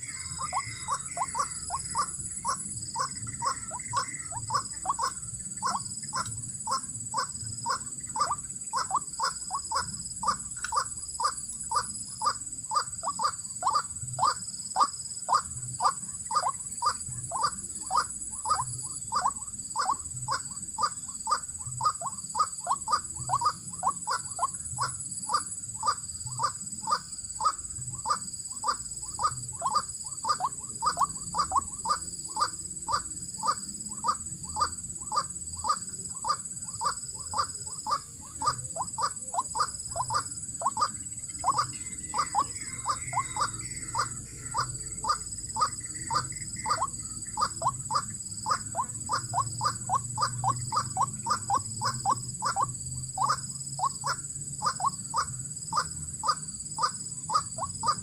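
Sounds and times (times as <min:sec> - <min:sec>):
waterhen calling: 0:00.0 - 0:11.4, 0:35.7 - 0:53.9
high-pitched background drone: 0:00.0 - 0:21.6, 0:36.9 - 0:55.2.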